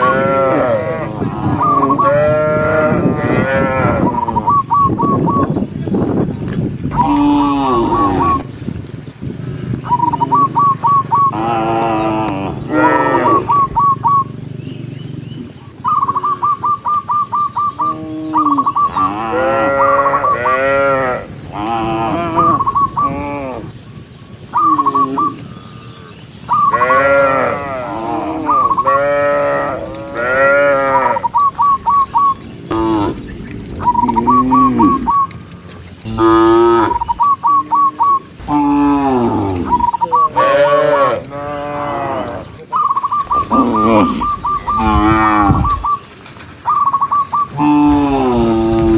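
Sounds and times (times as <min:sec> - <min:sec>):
cattle mooing: 0:00.0 - 0:04.5, 0:06.9 - 0:08.6, 0:11.2 - 0:14.0, 0:17.8 - 0:23.8, 0:24.6 - 0:31.4, 0:32.7 - 0:35.4, 0:36.0 - 0:42.7, 0:43.3 - 0:45.9, 0:47.5 - 0:48.9
bird calling short repeated notes: 0:30.3 - 0:35.7, 0:39.5 - 0:40.6, 0:42.7 - 0:47.6.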